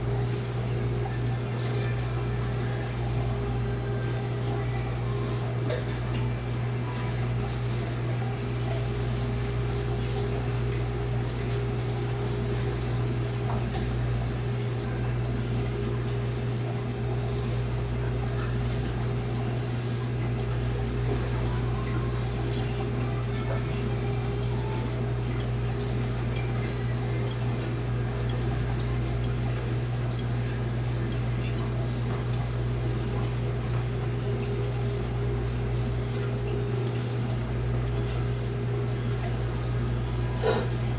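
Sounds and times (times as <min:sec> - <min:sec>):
knife scraping on whetstone: 0:00.4 - 0:01.8, 0:09.2 - 0:21.1, 0:22.2 - 0:31.7, 0:32.4 - 0:40.7.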